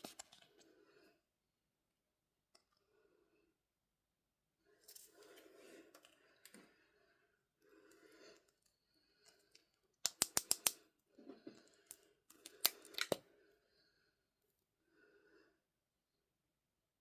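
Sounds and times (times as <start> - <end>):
sharp clicks: 10.0 - 10.8.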